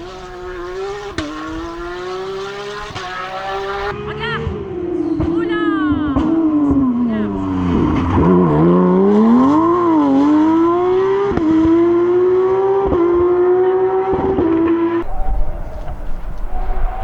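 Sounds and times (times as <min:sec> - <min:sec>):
lower rougher engine noise: 0:00.0 - 0:04.0, 0:15.0 - 0:17.0
racing engine at high revs: 0:00.0 - 0:04.6, 0:06.2 - 0:17.0.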